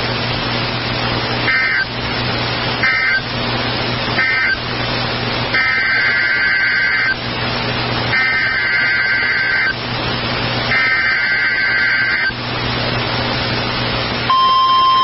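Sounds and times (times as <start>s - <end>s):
radio hiss: 0.0s - 14.2s
low hum: 0.0s - 15.0s
warbling data tones: 1.4s - 1.9s, 2.8s - 3.3s, 4.2s - 4.6s, 5.5s - 7.2s, 8.1s - 9.8s, 10.7s - 12.4s.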